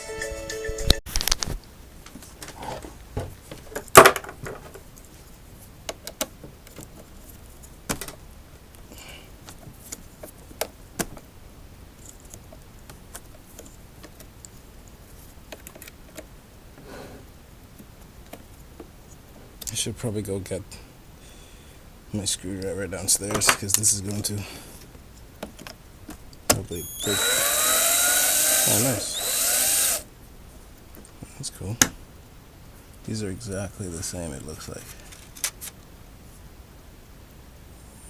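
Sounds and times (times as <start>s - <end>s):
soft rustling: 4.6s - 5.8s, 6.4s - 7.9s.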